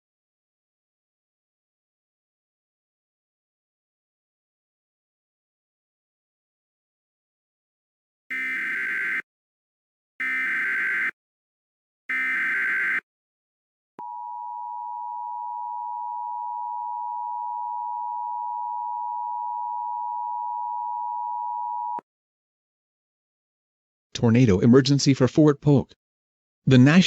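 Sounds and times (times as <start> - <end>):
harsh digital data bursts: 8.3 - 9.2, 10.2 - 11.1, 12.1 - 13.0.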